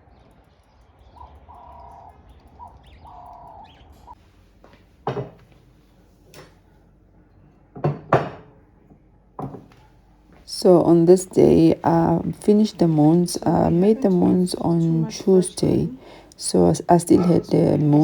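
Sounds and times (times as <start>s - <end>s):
kitchen knocks and clatters: 5.0s - 5.5s, 7.8s - 8.6s, 9.4s - 9.7s
dove cooing: 10.8s - 18.0s.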